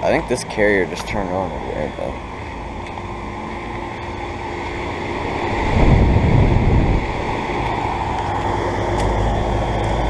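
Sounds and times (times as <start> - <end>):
air conditioner units humming: 0.0 - 10.0
wind on microphone: 5.3 - 8.5.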